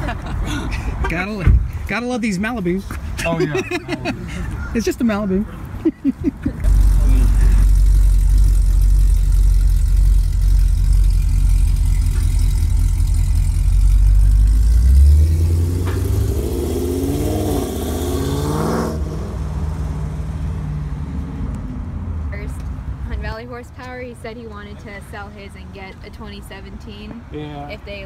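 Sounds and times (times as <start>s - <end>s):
car exhaust idling and revving: 6.4s - 21.0s.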